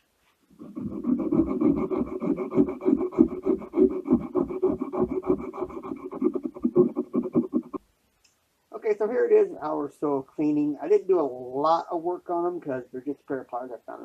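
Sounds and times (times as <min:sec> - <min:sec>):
sandpaper rubbing on metal: 0:00.6 - 0:07.8.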